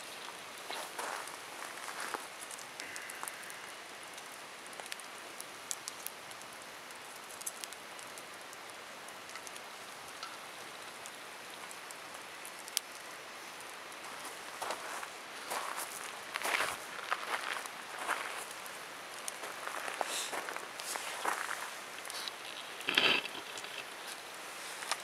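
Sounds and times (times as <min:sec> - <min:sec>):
fire crackles and pops: 0:00.0 - 0:25.0
wood fire hissing: 0:00.0 - 0:25.0.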